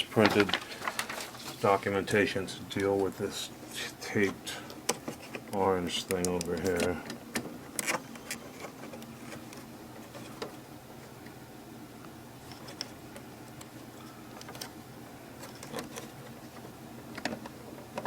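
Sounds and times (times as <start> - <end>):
steady low hum: 0.0 - 18.0
hands handling plastic parts: 0.2 - 1.8, 4.2 - 10.6.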